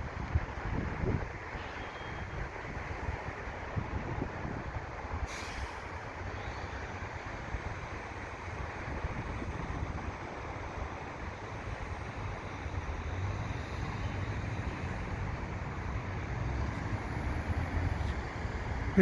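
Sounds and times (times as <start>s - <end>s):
wind buffeting microphone: 0.0s - 1.4s, 2.2s - 5.2s.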